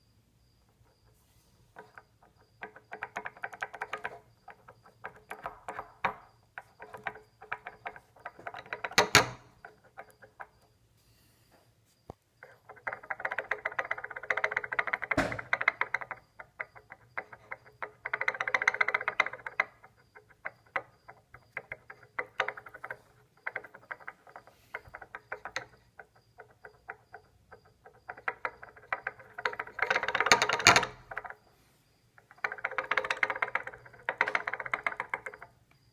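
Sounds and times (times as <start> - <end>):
sharp engine knocks: 15.1 - 15.6.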